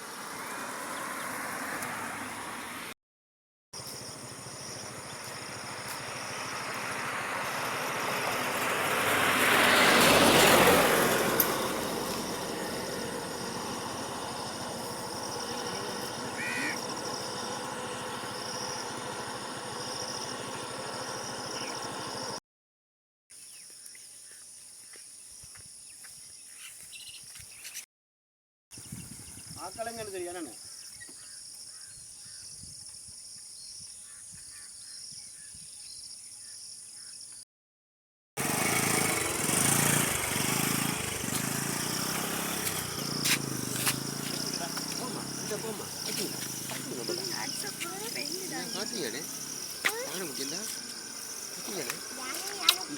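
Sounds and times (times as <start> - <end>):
vehicle passing by: 0.0 - 3.0, 4.4 - 22.4, 38.4 - 52.9
high insect drone: 3.8 - 22.4, 38.9 - 52.9
bird chirp: 19.9 - 22.4, 23.4 - 27.8, 30.4 - 37.4.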